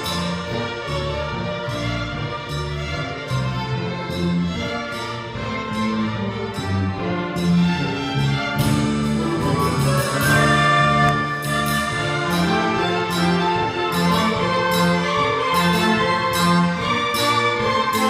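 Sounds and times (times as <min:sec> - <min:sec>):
bass notes: 0:00.0 - 0:18.0
strings: 0:00.0 - 0:18.0
symphony orchestra playing: 0:00.0 - 0:18.0.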